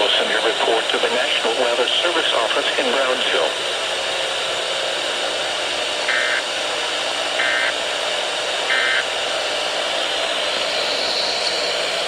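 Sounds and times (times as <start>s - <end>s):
radio hiss: 0.0s - 4.3s, 6.0s - 6.5s, 7.3s - 7.8s, 8.6s - 9.2s, 9.9s - 12.0s
buzzy digital data tones: 6.0s - 6.5s, 7.4s - 7.8s, 8.7s - 9.1s, 10.7s - 12.0s.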